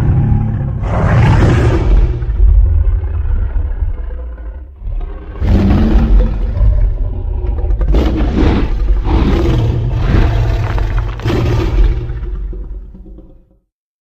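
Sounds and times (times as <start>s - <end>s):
monster growling and roaring: 0.0s - 13.4s
low rumble: 0.0s - 13.6s.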